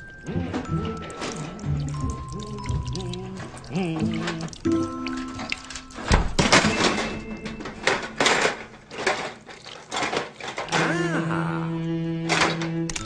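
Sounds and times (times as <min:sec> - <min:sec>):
sharp clanks and knocks: 0:05.4 - 0:10.9
held musical tone with glide: 0:11.4 - 0:13.0.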